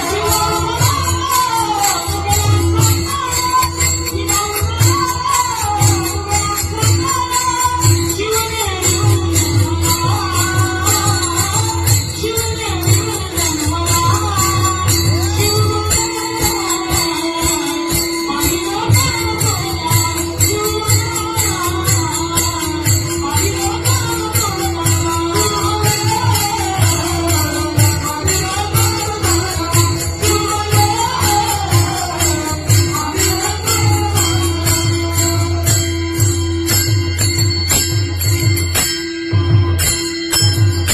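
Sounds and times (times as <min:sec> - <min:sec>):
devotional song music: 0:00.0 - 0:40.9
jingling percussion: 0:00.0 - 0:40.9
drum: 0:02.2 - 0:40.9.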